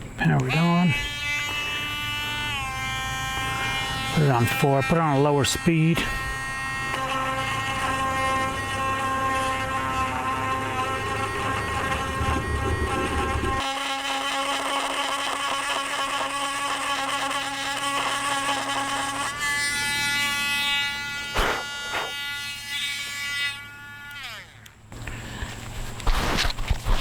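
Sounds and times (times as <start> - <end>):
rotary tool high whine: 0.0 - 27.0
rough grinding noise: 0.0 - 27.0
sharp knock: 21.4 - 22.1.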